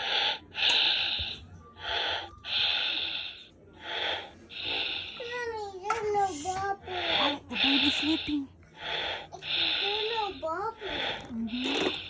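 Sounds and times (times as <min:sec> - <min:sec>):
baby snoring: 0:09.0 - 0:12.0.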